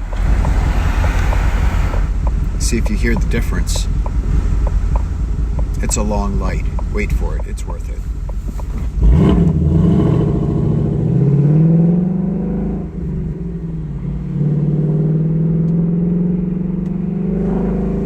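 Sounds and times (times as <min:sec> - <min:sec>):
car exhaust roaring: 0:00.0 - 0:18.0.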